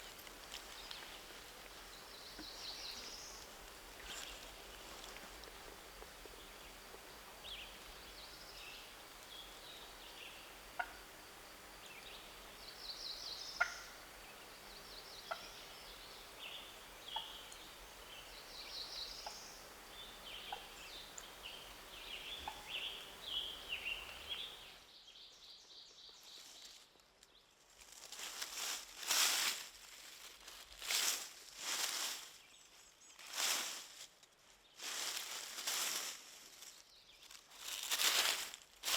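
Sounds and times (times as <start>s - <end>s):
bird calls: 0.0s - 24.8s
turkey gobbling: 10.7s - 11.1s, 13.6s - 14.1s, 15.3s - 15.6s, 20.4s - 20.8s, 22.4s - 23.0s.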